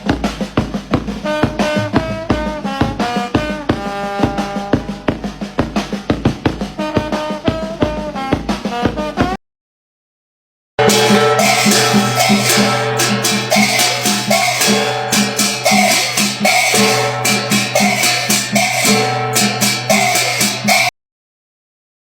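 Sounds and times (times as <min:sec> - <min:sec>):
rhythmic percussion hits: 0:00.0 - 0:07.2, 0:10.8 - 0:20.9
held melody tones: 0:10.8 - 0:20.9.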